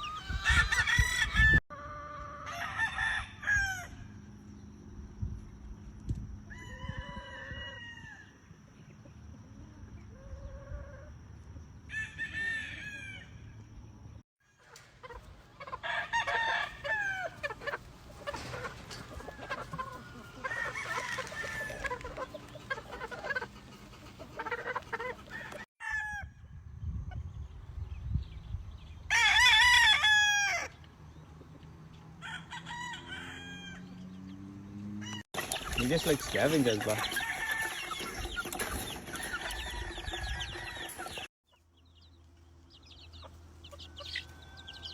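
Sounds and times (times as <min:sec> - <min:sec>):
roosters crowing: 0:00.0 - 0:04.4, 0:06.4 - 0:08.6, 0:11.8 - 0:13.6, 0:15.0 - 0:26.4, 0:29.1 - 0:31.2, 0:32.1 - 0:41.3, 0:42.9 - 0:44.9
chickens clucking: 0:14.6 - 0:25.7, 0:35.0 - 0:44.9.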